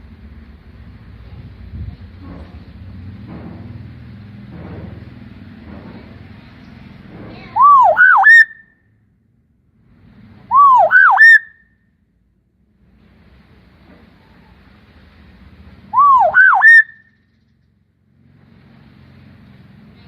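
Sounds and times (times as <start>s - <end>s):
myna bird whistling: 7.5s - 8.8s, 10.5s - 11.7s, 15.9s - 17.3s.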